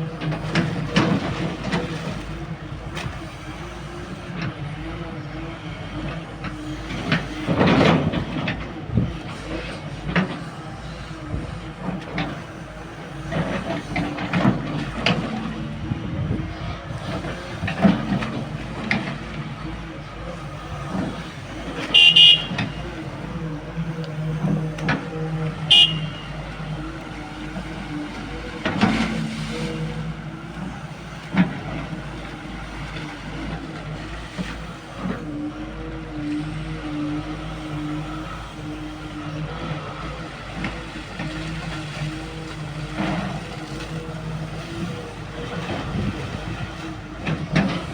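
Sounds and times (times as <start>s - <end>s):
excavator engine droning: 0.0s - 47.9s
machine clanks and knocks: 6.4s - 8.7s.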